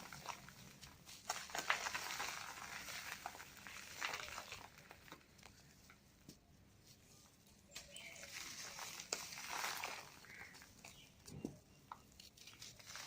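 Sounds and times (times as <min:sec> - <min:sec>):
cement crushing and crumbling: 0:00.0 - 0:06.0, 0:07.9 - 0:13.0.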